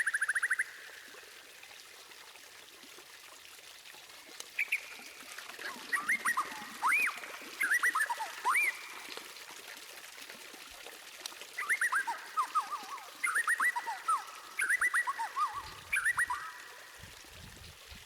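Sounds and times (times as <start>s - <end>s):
faint trickle of water: 0.0s - 18.0s
bird singing whistled notes: 5.9s - 9.0s, 11.6s - 16.8s.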